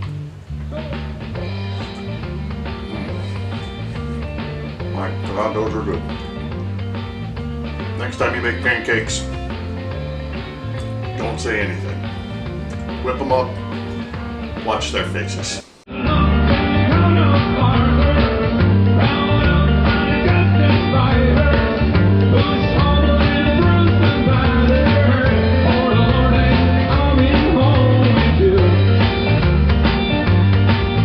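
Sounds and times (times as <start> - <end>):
drums: 0.0 - 31.0
electric guitar: 0.0 - 31.0
person singing: 0.6 - 6.8, 15.9 - 28.9.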